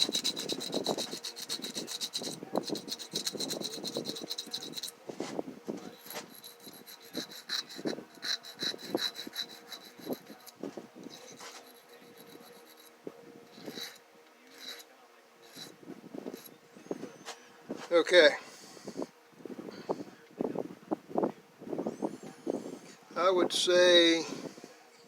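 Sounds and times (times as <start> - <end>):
metal rubbing on sharpening stone: 0.0 - 5.0, 5.8 - 16.6.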